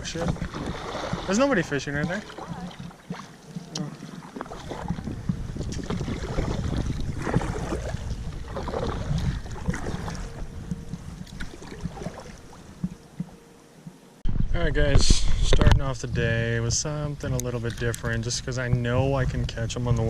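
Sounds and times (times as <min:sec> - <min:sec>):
paddle splashing in water: 0:00.0 - 0:13.4
wind rumbling on microphone: 0:00.0 - 0:20.0.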